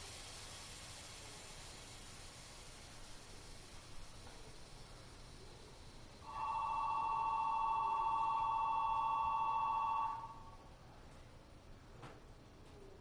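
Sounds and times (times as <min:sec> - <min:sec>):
electronic two-tone departure bell: 0:06.3 - 0:10.4.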